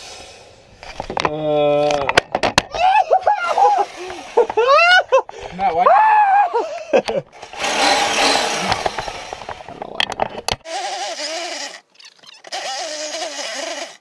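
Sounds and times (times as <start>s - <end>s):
power tool cutting panel: 7.4s - 9.6s, 10.5s - 14.0s.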